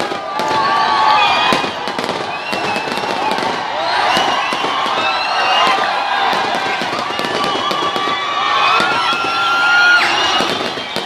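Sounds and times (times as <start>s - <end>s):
crowd cheering: 0.0s - 11.0s
fireworks crackling: 0.0s - 11.0s
high shout: 0.1s - 11.0s.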